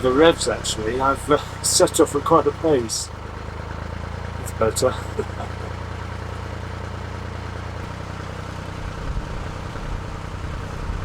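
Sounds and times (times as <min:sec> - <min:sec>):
boat engine humming: 0:00.0 - 0:11.0
wind buffeting microphone: 0:08.8 - 0:11.0.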